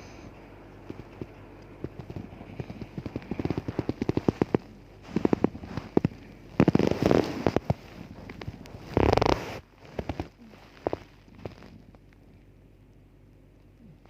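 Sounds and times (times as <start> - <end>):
woman snoring: 2.3 - 7.8, 8.8 - 11.7.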